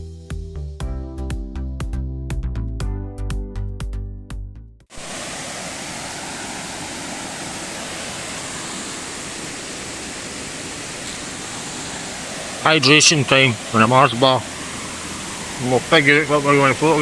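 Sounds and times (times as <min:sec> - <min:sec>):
waterfall rushing: 0:04.9 - 0:17.0.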